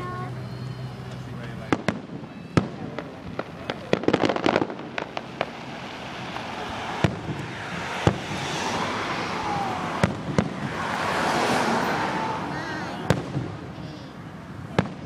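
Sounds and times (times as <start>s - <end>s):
crackling hiss: 0.7s - 12.0s
fireworks cracking and banging: 1.0s - 15.0s.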